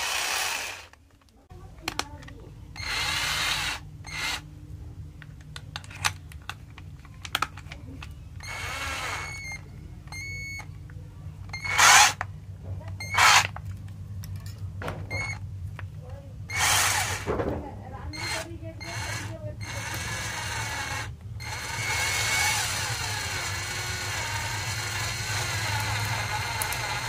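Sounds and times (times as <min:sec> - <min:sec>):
cordless drill whirring: 0:00.0 - 0:01.0, 0:02.8 - 0:04.4, 0:08.4 - 0:10.6, 0:11.5 - 0:12.2, 0:13.0 - 0:13.6, 0:16.5 - 0:17.3, 0:18.1 - 0:27.0.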